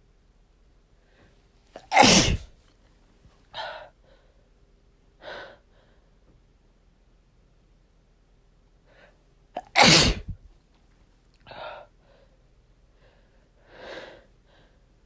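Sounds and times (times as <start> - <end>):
quiet gasping breaths: 0.9 - 6.5, 8.8 - 9.4, 11.4 - 15.0
loud chesty sneeze: 1.8 - 2.6, 9.6 - 10.4.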